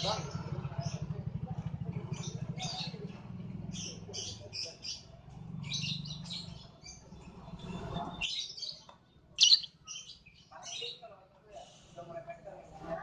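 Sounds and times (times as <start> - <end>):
sharp bird call: 9.4 - 9.7
lovebird chirping: 9.4 - 10.2.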